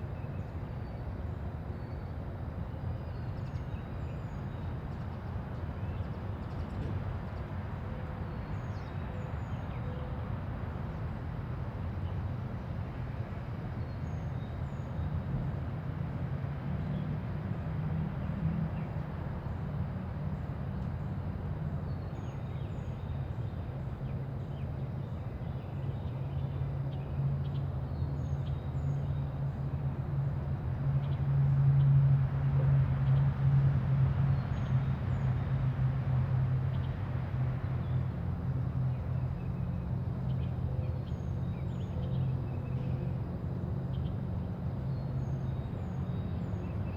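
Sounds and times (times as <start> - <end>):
distant traffic rumble: 0.0 - 46.9
vehicle approaching: 28.8 - 46.9.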